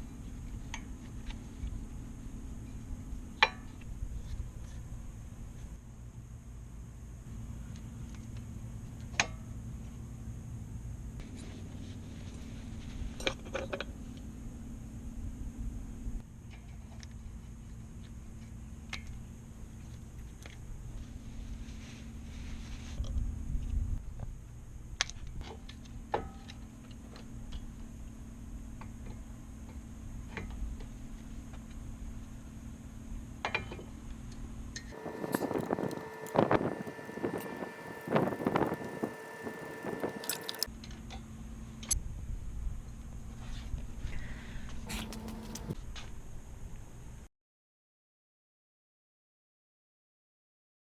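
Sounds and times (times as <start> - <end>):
steady low hum: 34.9 - 40.7, 44.8 - 45.8.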